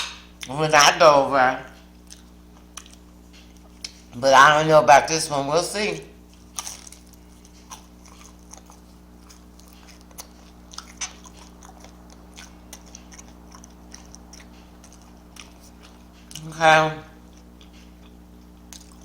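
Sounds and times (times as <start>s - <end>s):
faint steady hum: 0.0s - 19.0s
person chewing: 1.7s - 4.2s, 6.2s - 19.0s
wet mouth clicks: 7.4s - 16.4s.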